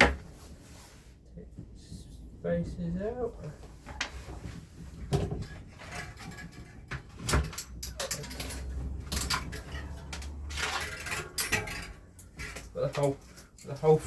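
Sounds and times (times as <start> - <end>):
metal parts knocking and clicking: 5.4 - 13.9.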